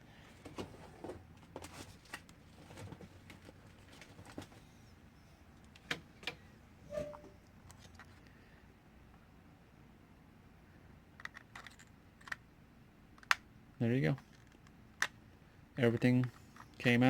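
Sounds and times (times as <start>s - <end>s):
small clicks and rustles: 11.2s - 12.4s.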